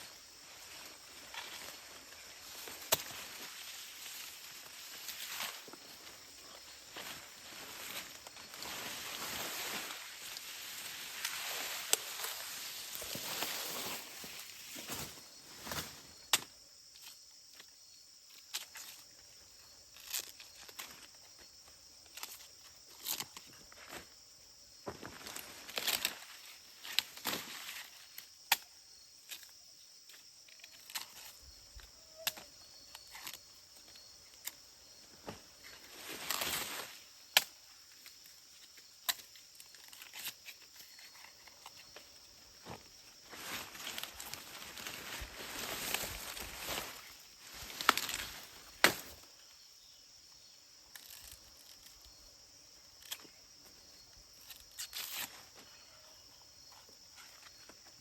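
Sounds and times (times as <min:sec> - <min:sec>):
rustling swishes in vegetation: 0:00.0 - 0:16.4, 0:33.0 - 0:38.7, 0:39.5 - 0:49.3
insects droning: 0:00.0 - 0:58.0.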